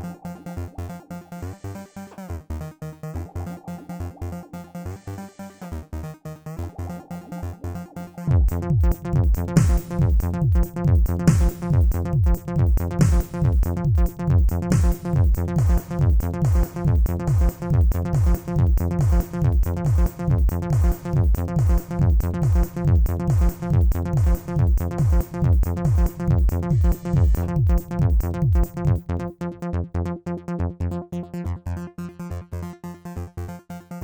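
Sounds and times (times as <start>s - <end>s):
electronic disco music: 0.0s - 29.1s
drum machine kick: 8.3s - 29.1s.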